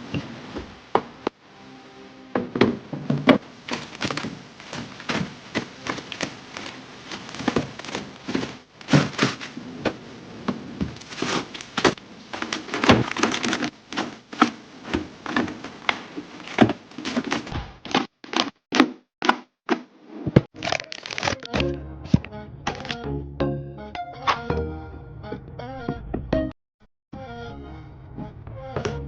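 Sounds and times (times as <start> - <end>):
food containers clicking and knocking: 2.4 - 19.4.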